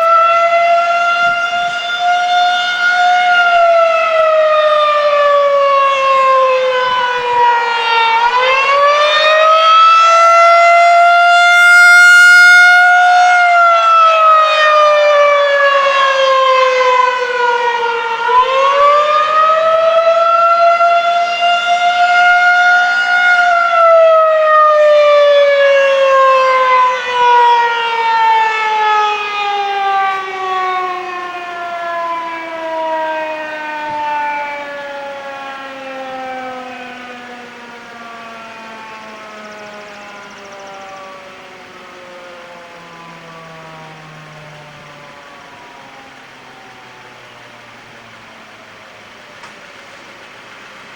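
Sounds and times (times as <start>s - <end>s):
tornado siren wailing: 0.0s - 50.9s.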